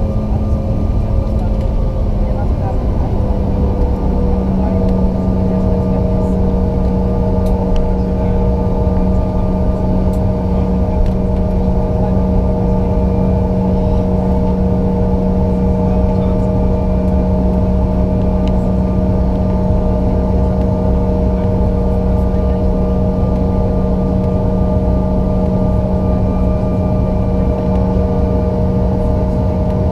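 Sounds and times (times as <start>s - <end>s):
jet engine drone with whine: 0.0s - 29.9s.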